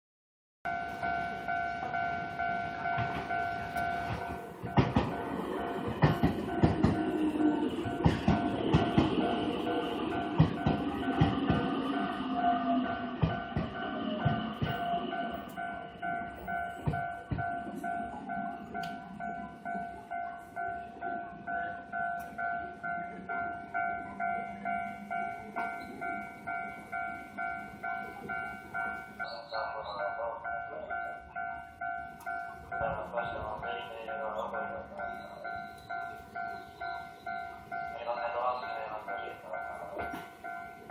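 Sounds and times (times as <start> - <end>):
level crossing alarm ringing: 0.7 - 40.9
train wheels clacking over rail joints: 2.9 - 15.6, 39.8 - 40.5.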